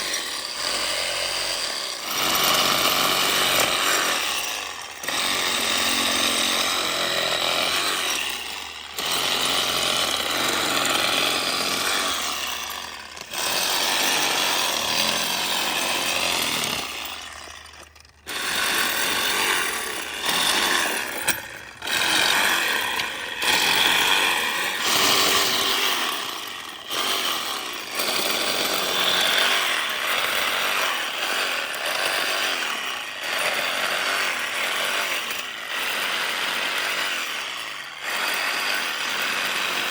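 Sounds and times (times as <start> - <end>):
reciprocating saw cutting wood: 0.0 - 39.9.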